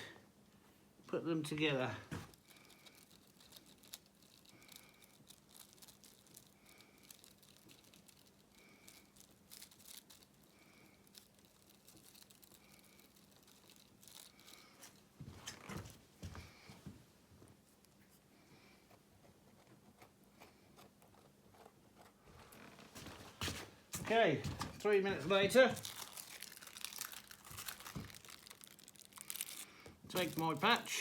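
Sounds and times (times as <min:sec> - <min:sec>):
faint crinkling and rubbing: 0:01.6 - 0:31.0.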